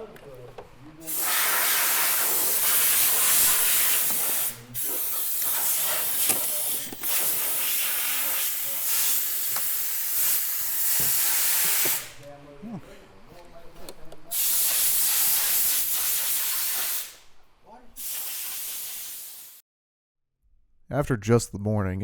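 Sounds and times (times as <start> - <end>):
compressed air hissing: 1.0 - 12.2, 14.3 - 17.3, 18.0 - 19.6.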